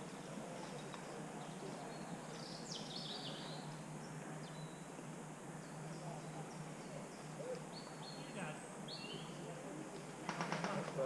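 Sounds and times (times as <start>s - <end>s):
steady background noise: 0.0s - 11.0s
bird chirps: 0.7s - 4.9s, 5.6s - 9.4s.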